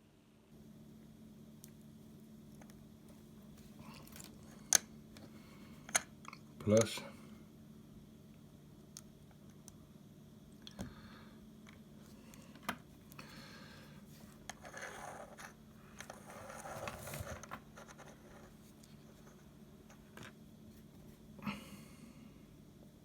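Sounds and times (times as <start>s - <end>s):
faint low hum: 0.0s - 23.0s
scraping and rustling of wires: 14.1s - 19.4s.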